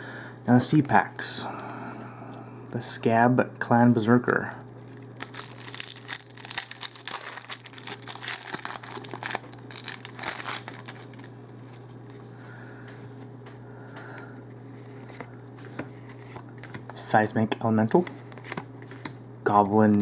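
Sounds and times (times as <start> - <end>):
foil wrapper crinkling and tearing: 4.8 - 11.8.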